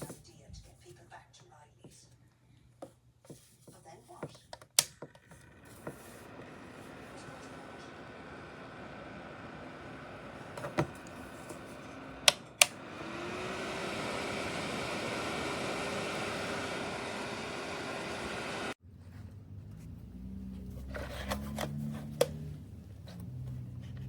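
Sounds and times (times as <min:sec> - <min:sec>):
heater fan whirring: 0:04.5 - 0:24.0
switch clicks: 0:12.2 - 0:12.8.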